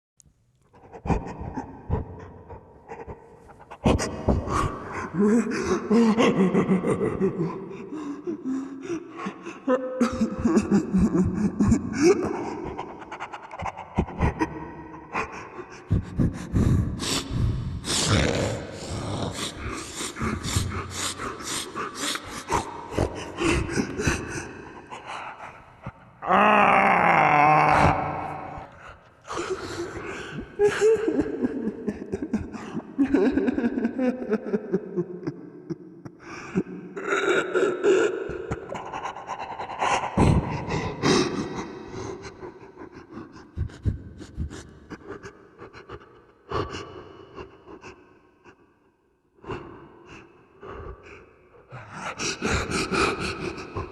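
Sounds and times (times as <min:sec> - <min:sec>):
man sobbing and sniffing: 0:01.1 - 0:35.0, 0:51.6 - 0:53.9.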